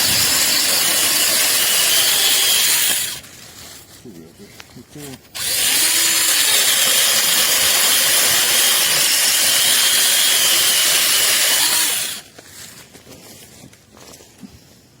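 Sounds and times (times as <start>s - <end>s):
chainsaw cutting wood: 0.0s - 3.2s, 5.4s - 12.3s.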